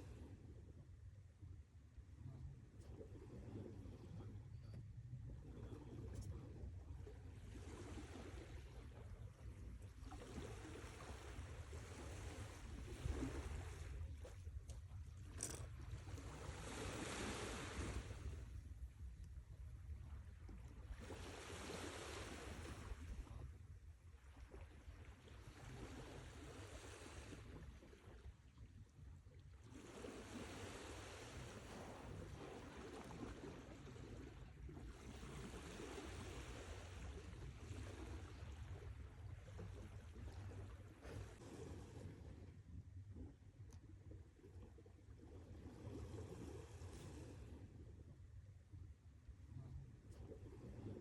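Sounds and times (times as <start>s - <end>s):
sea waves washing onto shore: 16.2s - 18.4s
faint tick: 43.6s - 43.9s.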